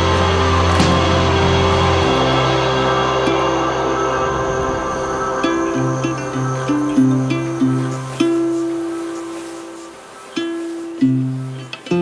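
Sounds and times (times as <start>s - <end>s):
plucked string note ringing: 0.0s - 9.2s.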